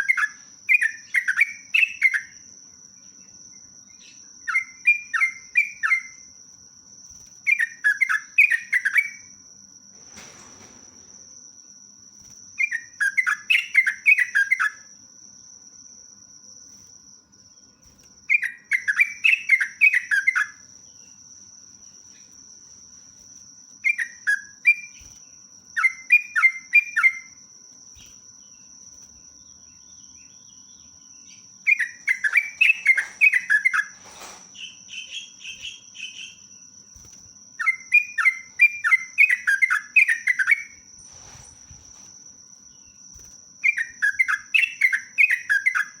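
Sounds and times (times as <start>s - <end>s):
bird warbling song: 0.0s - 2.4s, 3.0s - 6.3s, 7.5s - 9.3s, 12.6s - 14.9s, 18.2s - 21.3s, 23.8s - 27.4s, 28.0s - 42.1s, 43.6s - 46.0s.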